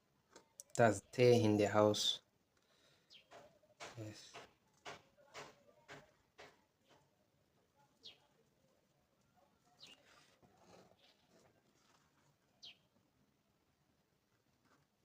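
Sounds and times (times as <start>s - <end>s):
faint high bird chirps: 3.0s - 3.7s, 7.9s - 8.4s, 9.3s - 11.4s, 12.5s - 13.0s.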